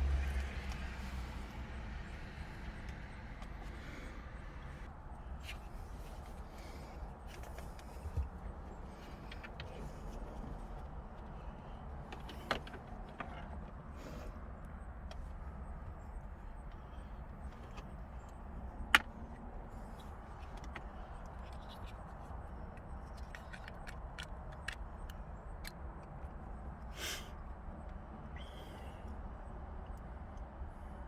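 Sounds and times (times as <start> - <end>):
parts clicking and knocking: 5.4 - 13.8, 14.6 - 26.7.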